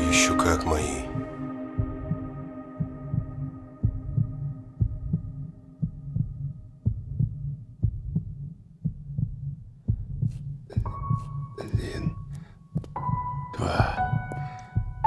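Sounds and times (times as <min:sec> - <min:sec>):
musical drone: 0:00.0 - 0:07.4
heartbeat thumps: 0:00.0 - 0:15.0.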